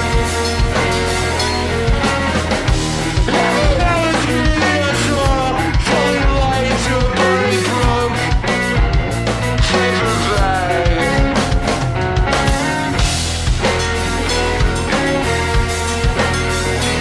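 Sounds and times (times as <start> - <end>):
rock music: 0.0 - 17.0.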